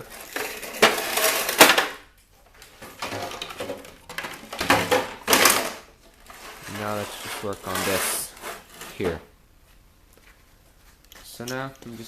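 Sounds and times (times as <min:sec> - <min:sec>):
metal and plastic parts rattling: 0:02.6 - 0:09.2.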